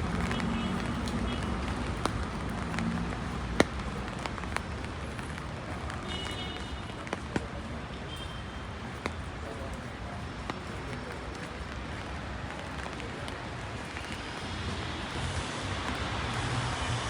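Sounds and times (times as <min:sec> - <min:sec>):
rain falling on street: 0:00.0 - 0:17.0
sharp taps: 0:00.2 - 0:07.5.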